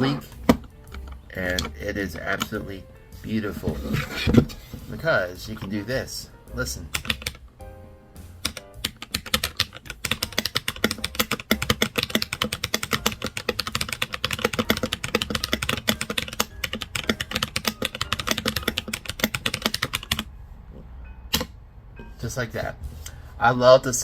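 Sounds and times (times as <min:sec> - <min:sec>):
mechanical keyboard typing: 0:06.9 - 0:07.4, 0:08.4 - 0:20.3.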